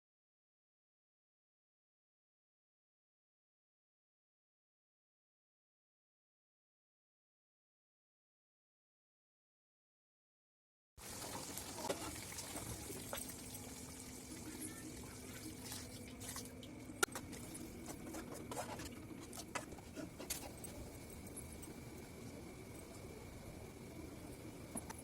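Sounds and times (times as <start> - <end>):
low steady hum: 11.0 - 25.0.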